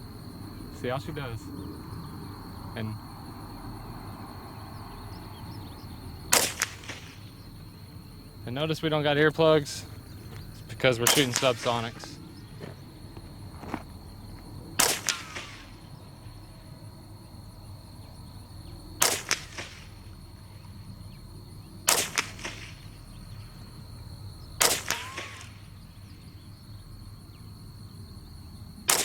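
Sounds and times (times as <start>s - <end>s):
rifle shots with echo: 6.3s - 7.7s, 10.8s - 12.3s, 14.8s - 16.0s, 19.0s - 20.1s, 21.8s - 23.3s, 24.6s - 26.1s.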